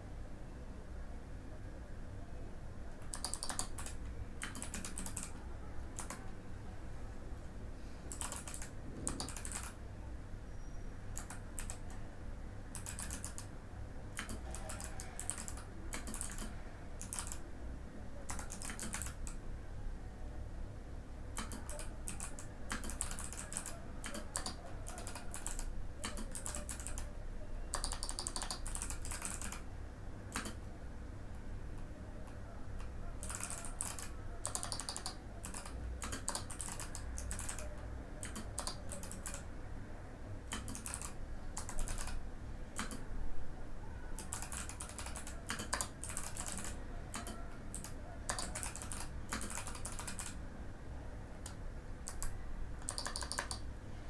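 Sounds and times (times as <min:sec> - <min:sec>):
mechanical keyboard typing: 0:03.0 - 0:06.3, 0:08.1 - 0:09.8, 0:11.2 - 0:12.0, 0:12.7 - 0:13.5, 0:14.1 - 0:17.5, 0:18.3 - 0:19.4, 0:21.4 - 0:27.1, 0:27.7 - 0:29.7, 0:30.3 - 0:30.6, 0:32.2 - 0:39.5, 0:40.5 - 0:42.2, 0:42.8 - 0:43.1, 0:44.2 - 0:50.4, 0:51.4 - 0:53.7.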